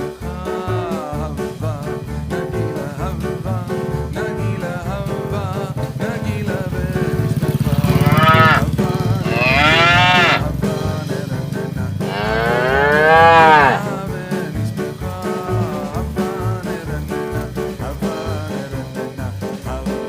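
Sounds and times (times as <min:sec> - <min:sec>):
background music: 0:00.0 - 0:20.0
cow mooing: 0:07.8 - 0:10.5, 0:12.0 - 0:14.0.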